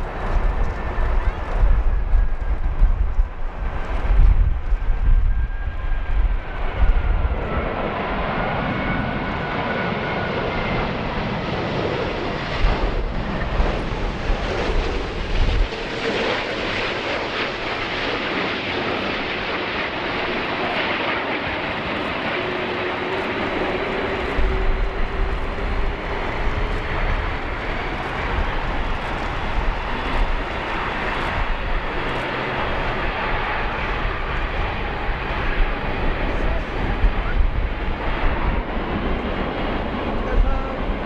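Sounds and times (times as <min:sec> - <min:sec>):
jet airliner passing overhead: 0:00.0 - 0:41.0
wind buffeting microphone: 0:00.0 - 0:41.0.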